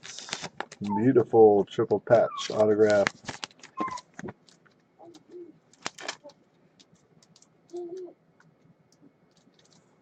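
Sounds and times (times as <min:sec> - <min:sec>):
trading cards handled: 0:02.4 - 0:09.9.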